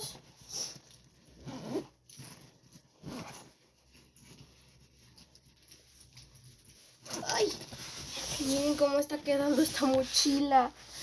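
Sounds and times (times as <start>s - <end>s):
backpack zipper being pulled: 1.3s - 3.6s.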